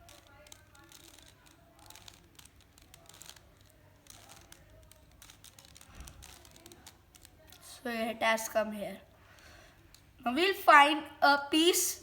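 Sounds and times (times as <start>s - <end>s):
plastic puzzle cube clicking: 0.0s - 7.7s.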